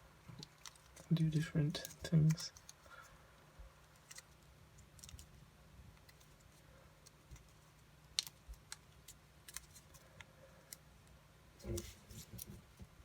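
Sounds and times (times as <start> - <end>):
paper crinkling and creasing: 11.6 - 12.9.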